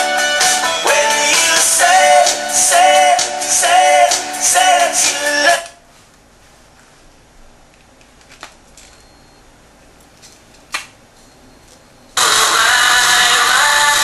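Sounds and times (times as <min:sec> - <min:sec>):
music from a small speaker: 0:00.0 - 0:05.6, 0:12.2 - 0:14.0.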